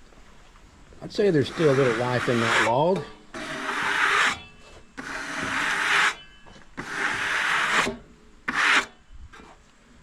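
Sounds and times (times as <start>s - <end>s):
rasping strokes across wood: 1.4s - 6.2s, 6.8s - 8.9s.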